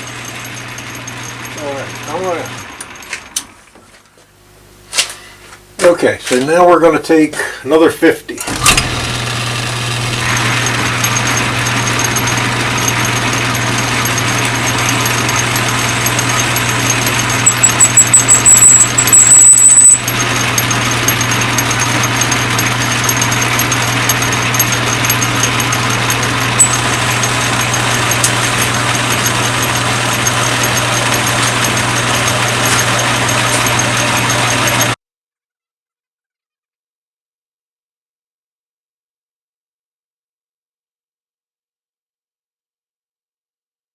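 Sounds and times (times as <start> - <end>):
metal lathe motor hum and cutting: 0.0 - 3.7, 8.5 - 35.0.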